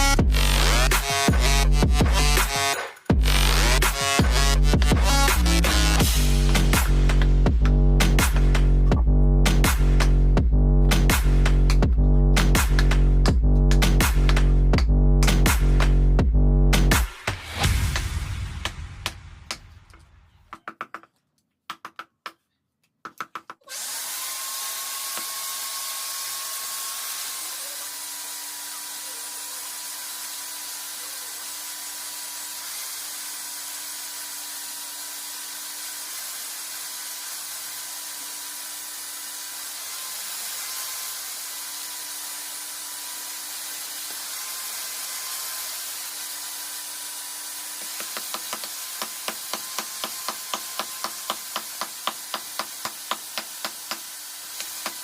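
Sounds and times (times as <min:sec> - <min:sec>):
power tool motor whining: 0:00.0 - 0:08.9, 0:23.7 - 0:55.0
quick run of taps: 0:20.5 - 0:23.7.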